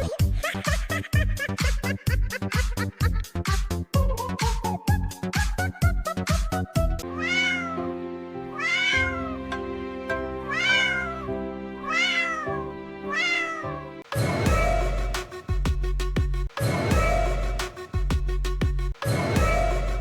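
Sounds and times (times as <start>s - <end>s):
cat meowing: 7.2s - 7.8s, 8.6s - 9.4s, 10.5s - 13.8s
electronic dance beat: 14.1s - 20.0s
held music chords: 14.1s - 20.0s.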